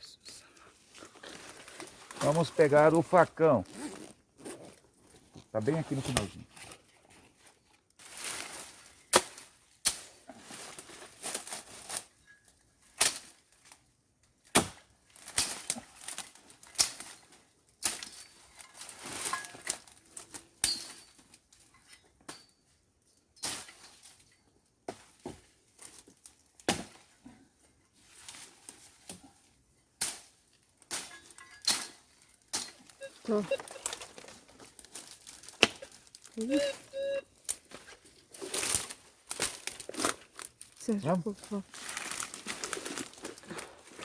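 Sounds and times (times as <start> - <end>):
leaves and twigs rustling: 0.4 - 12.2, 15.0 - 21.8, 28.0 - 44.0
machete chopping branches: 9.1 - 10.2, 13.0 - 13.4, 14.4 - 16.1, 26.6 - 27.1, 30.0 - 32.8, 35.3 - 36.0.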